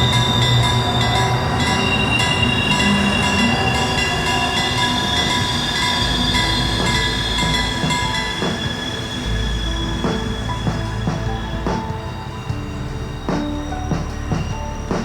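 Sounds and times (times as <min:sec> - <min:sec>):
diesel locomotive rumble: 0:00.0 - 0:15.0
train wheels squealing on rails: 0:00.0 - 0:15.0.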